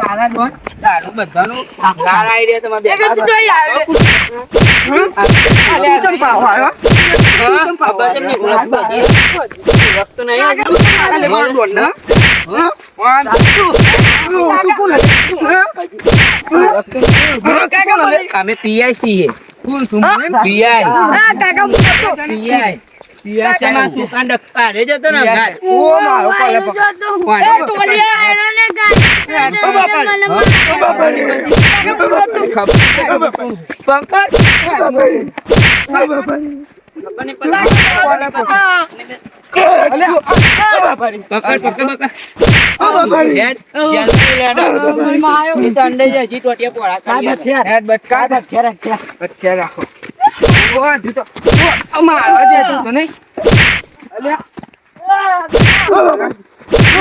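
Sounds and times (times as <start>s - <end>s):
sharp smacking blows: 3.9s - 5.9s, 6.8s - 7.6s, 9.0s - 10.1s, 10.7s - 11.3s, 12.0s - 12.6s, 13.3s - 14.4s, 15.0s - 17.5s, 21.7s - 22.2s, 28.9s - 29.4s, 30.4s - 30.8s, 31.5s - 32.0s, 32.6s - 33.1s, 34.3s - 34.8s, 35.4s - 36.0s, 37.6s - 38.1s, 40.3s - 40.8s, 42.4s - 42.9s, 44.0s - 44.6s, 50.4s - 50.8s, 51.4s - 51.9s, 53.4s - 54.0s, 55.5s - 55.9s, 56.7s - 57.0s
sharp strikes: 3.9s - 6.0s, 6.8s - 7.6s, 9.0s - 11.3s, 12.0s - 12.6s, 13.3s - 17.6s, 21.7s - 22.2s, 28.9s - 29.5s, 30.3s - 30.9s, 31.5s - 32.0s, 32.6s - 33.2s, 34.3s - 34.8s, 35.4s - 36.0s, 37.6s - 38.1s, 40.3s - 40.8s, 42.4s - 42.9s, 44.0s - 44.6s, 50.4s - 50.8s, 51.4s - 51.9s, 53.4s - 54.0s, 55.5s - 55.9s, 56.7s - 57.0s.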